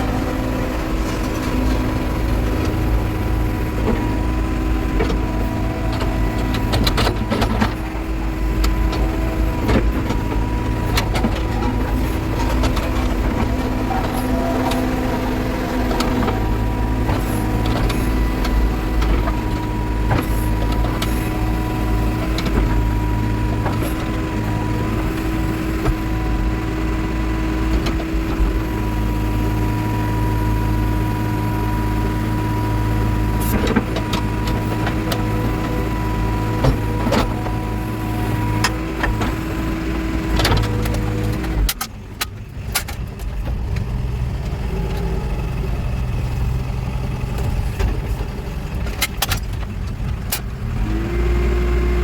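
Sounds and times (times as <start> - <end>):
steady whine: 0.0 - 26.8
diesel engine running: 0.0 - 52.0.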